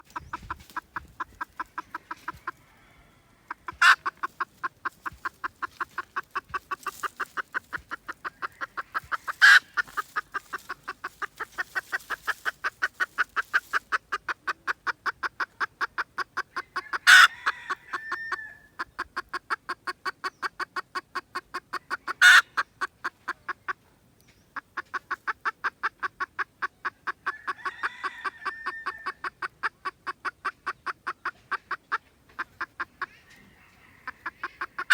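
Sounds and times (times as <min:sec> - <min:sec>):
junglefowl clucking: 0:00.0 - 0:34.9.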